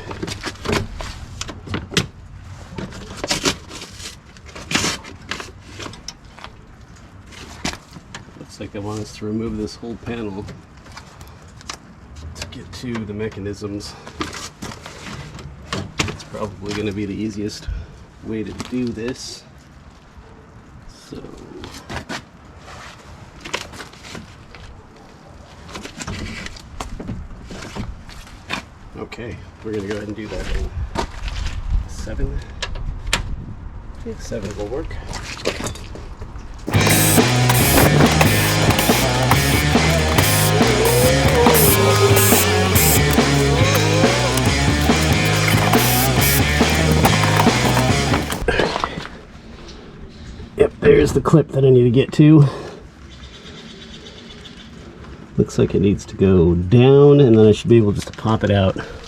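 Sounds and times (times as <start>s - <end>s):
sharp knocks: 36.7s - 48.4s
tools clicking and scraping on door: 36.7s - 48.4s.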